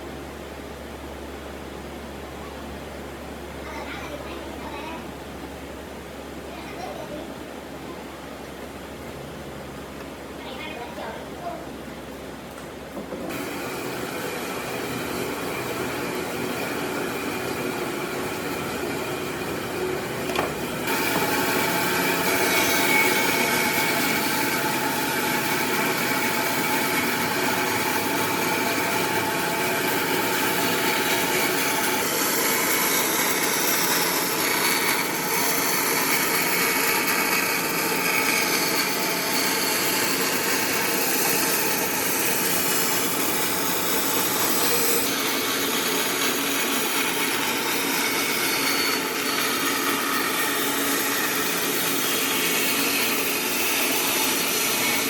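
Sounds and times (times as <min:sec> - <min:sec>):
power tool cutting wood: 0:13.3 - 0:55.0.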